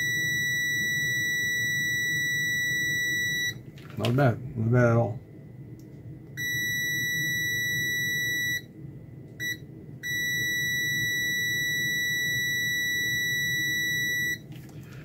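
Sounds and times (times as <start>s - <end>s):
multimeter continuity beep: 0.0s - 3.6s, 6.4s - 8.8s, 9.4s - 14.4s.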